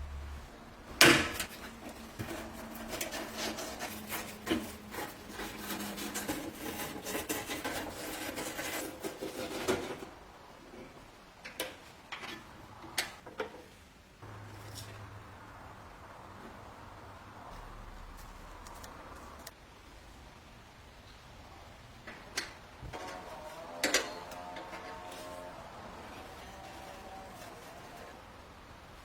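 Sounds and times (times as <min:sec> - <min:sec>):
scraping and rubbing with clicks: 0:01.4 - 0:10.1.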